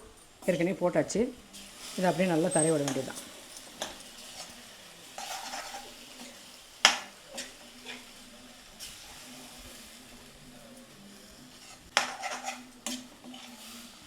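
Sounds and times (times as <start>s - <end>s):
food sizzling in a frying pan: 0.0s - 14.0s
utensil scraping and knocking pan: 5.2s - 8.1s, 11.5s - 13.8s.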